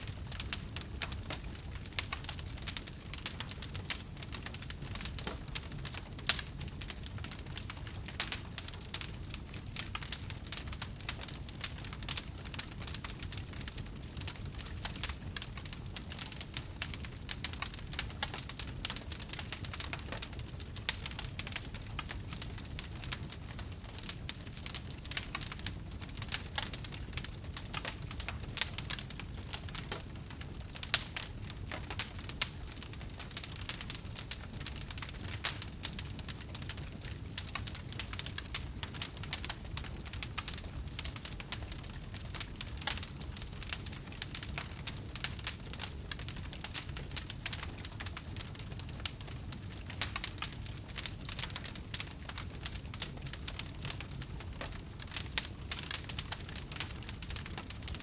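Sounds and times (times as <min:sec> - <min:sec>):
bonfire crackling: 0:00.0 - 0:58.0
burning wood popping: 0:00.0 - 0:58.0.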